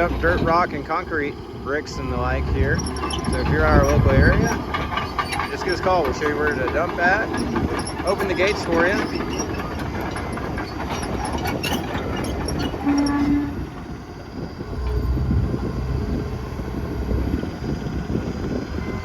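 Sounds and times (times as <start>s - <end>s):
excavator diesel engine running: 0.0s - 19.0s
steady tone: 14.2s - 19.0s.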